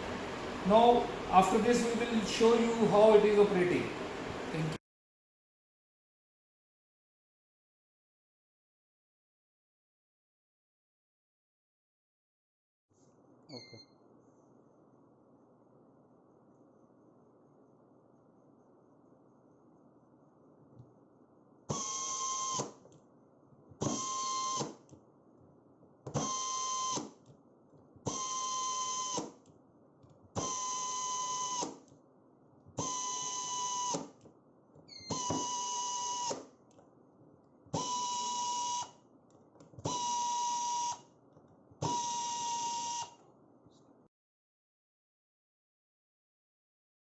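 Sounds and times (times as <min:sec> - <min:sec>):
pneumatic screwdriver whine: 0:21.7 - 0:22.8, 0:23.8 - 0:24.8, 0:26.1 - 0:27.2, 0:28.1 - 0:29.4, 0:30.4 - 0:31.8, 0:32.8 - 0:34.2, 0:34.9 - 0:36.5, 0:37.8 - 0:39.0, 0:39.8 - 0:41.1, 0:41.8 - 0:43.2.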